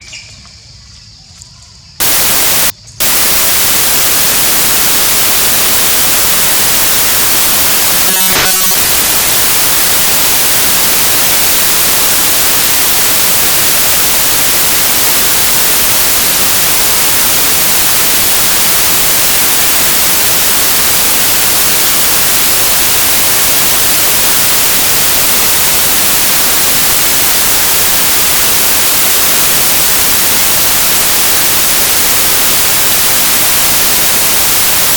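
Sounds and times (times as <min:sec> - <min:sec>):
white noise static hiss: 0:02.0 - 0:34.9.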